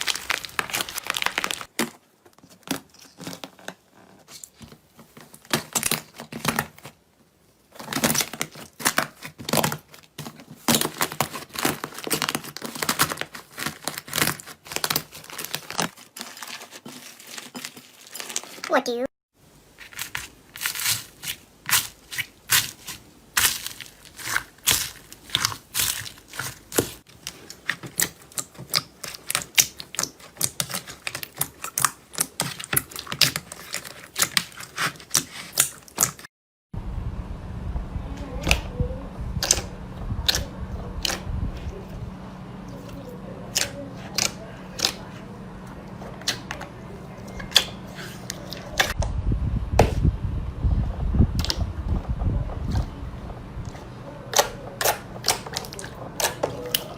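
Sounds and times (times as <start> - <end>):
steady low hum: 36.8 - 56.9.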